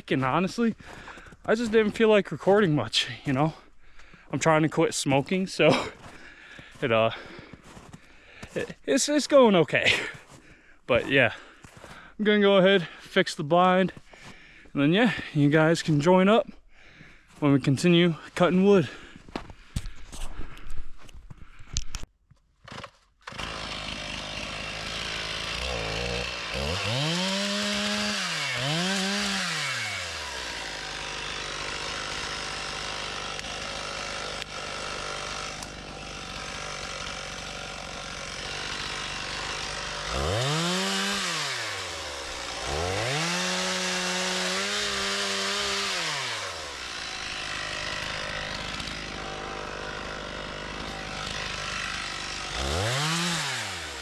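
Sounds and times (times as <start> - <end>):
chainsaw revving: 22.7 - 54.0.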